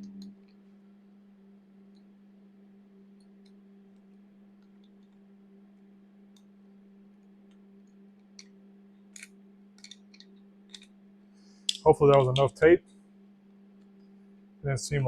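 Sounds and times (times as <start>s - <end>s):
steady low hum: 0.0s - 15.0s
small clicks of fitting handled: 9.1s - 10.9s.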